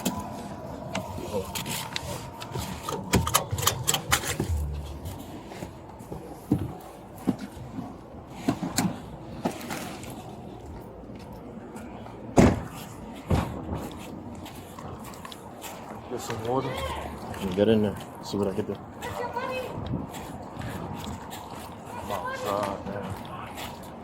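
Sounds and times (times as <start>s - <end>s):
loud thumps: 12.4s - 13.9s.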